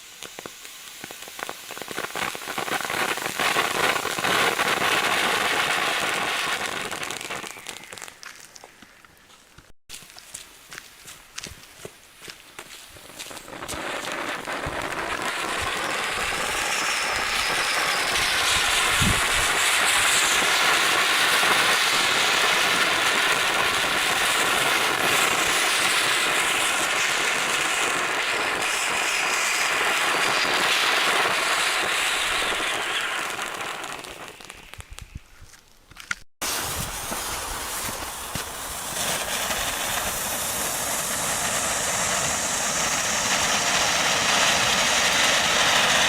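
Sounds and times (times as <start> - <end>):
firework fountain spraying hiss: 0.0 - 8.6, 9.9 - 35.3, 36.4 - 46.0.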